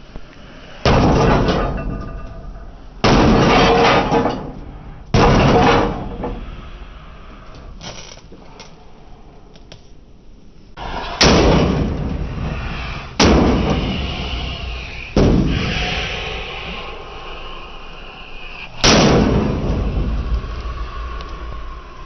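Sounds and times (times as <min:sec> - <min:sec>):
loud bangs on microwave oven: 0:00.9 - 0:01.7, 0:03.0 - 0:04.3, 0:05.2 - 0:06.1, 0:11.2 - 0:12.3, 0:13.2 - 0:13.9, 0:15.2 - 0:15.6.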